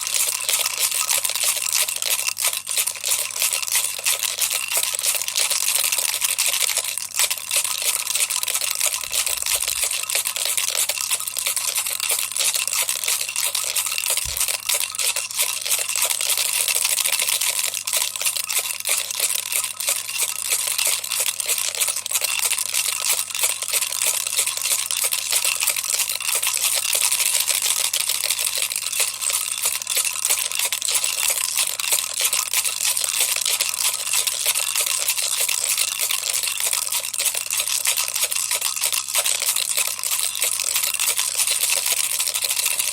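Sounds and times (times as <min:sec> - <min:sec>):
toy rattle shaking: 0:00.0 - 0:42.9.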